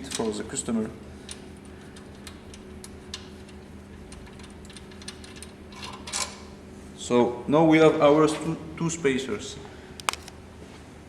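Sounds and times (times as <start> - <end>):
clicks of small metal parts: 10.0 - 10.4.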